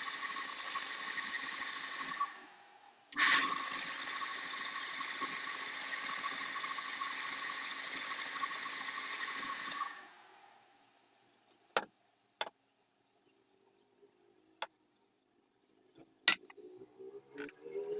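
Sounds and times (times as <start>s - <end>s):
wood lathe whining: 0.0s - 2.6s, 3.2s - 10.4s.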